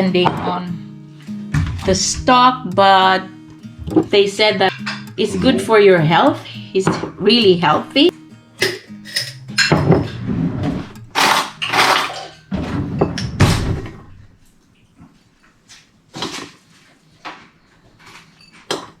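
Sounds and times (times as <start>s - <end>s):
tableware scraping and rattling: 3.8s - 7.4s, 8.6s - 14.4s, 18.0s - 19.0s.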